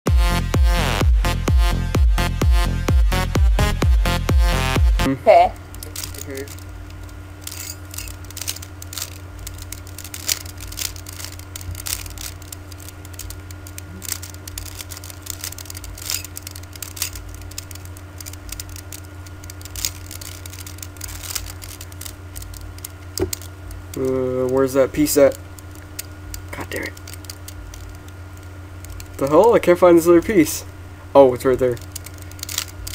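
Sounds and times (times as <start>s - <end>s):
electrical hum: 0.1s - 32.9s
plastic puzzle cube clicking: 5.7s - 28.1s, 31.6s - 32.9s.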